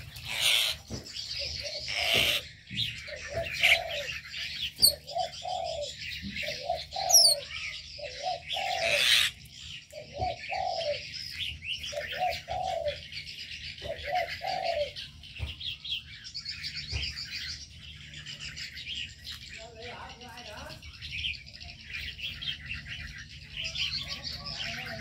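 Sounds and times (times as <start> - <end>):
dove cooing: 0.0 - 13.2, 13.8 - 15.1
small birds chirping: 0.0 - 25.0.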